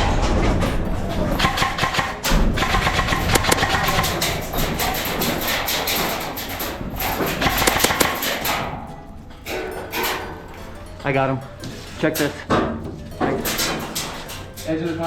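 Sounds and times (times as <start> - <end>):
airsoft rifles firing: 1.4 - 8.7.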